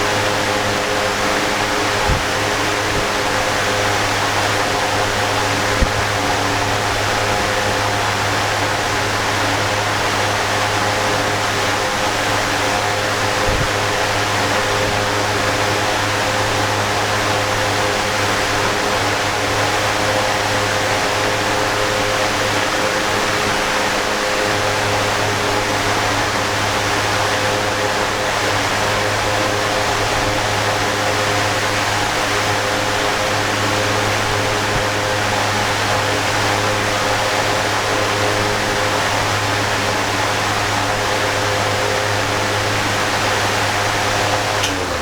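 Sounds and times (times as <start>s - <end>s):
electric fan running: 0.0s - 45.0s
small click: 44.3s - 44.9s.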